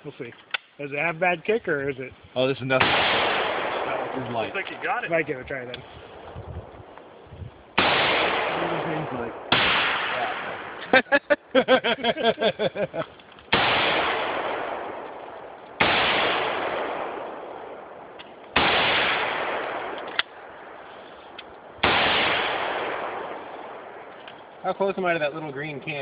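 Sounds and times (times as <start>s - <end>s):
rifle shots echoing: 2.7s - 6.3s, 7.0s - 11.0s, 13.5s - 25.4s.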